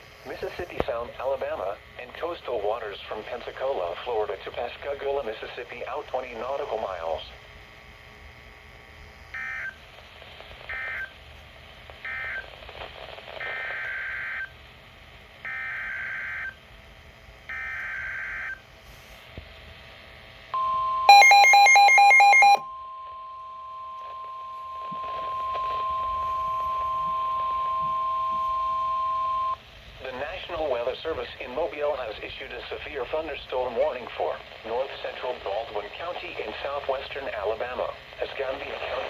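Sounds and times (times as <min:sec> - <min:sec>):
pulsing electronic beeping: 0:20.6 - 0:29.6
steady radio alert tone: 0:20.6 - 0:29.6
warbling data tone bursts: 0:20.6 - 0:29.6.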